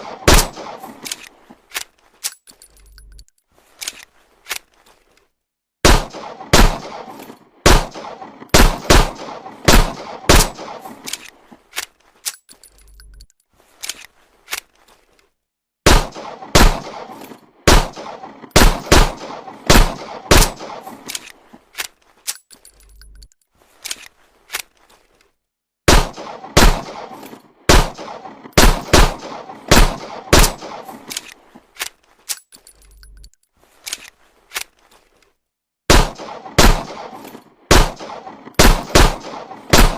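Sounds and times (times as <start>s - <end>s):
pistol gunshots: 0.0s - 1.0s, 5.8s - 11.0s, 15.9s - 21.2s, 25.9s - 31.1s, 35.9s - 39.9s.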